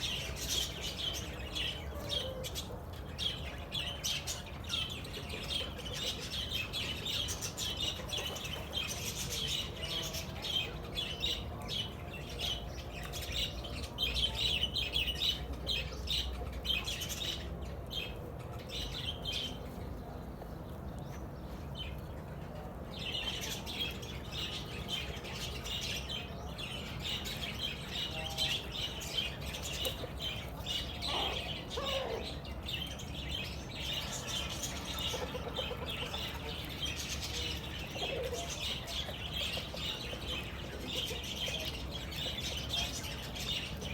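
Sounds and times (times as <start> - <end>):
chicks peeping: 27.1 - 43.9.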